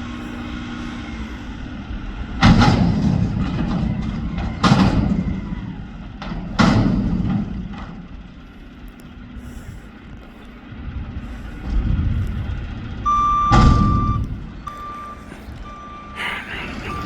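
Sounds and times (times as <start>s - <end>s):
truck engine running: 0.0s - 17.0s.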